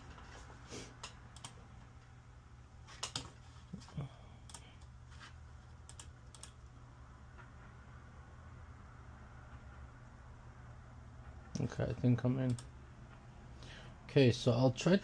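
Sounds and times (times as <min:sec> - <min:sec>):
faint low hum: 0:00.0 - 0:15.0
keyboard typing: 0:01.0 - 0:01.6, 0:03.0 - 0:03.4, 0:05.7 - 0:06.7.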